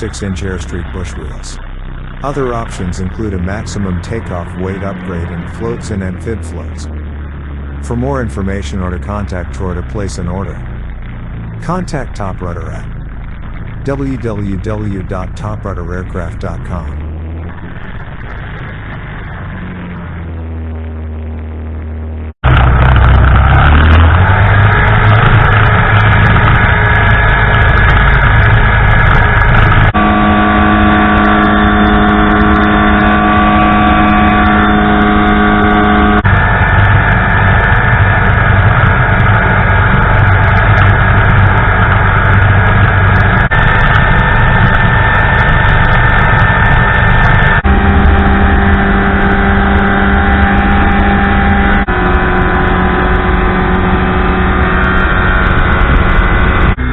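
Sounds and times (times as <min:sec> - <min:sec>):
ultralight aircraft engine droning: 0:00.0 - 0:56.9.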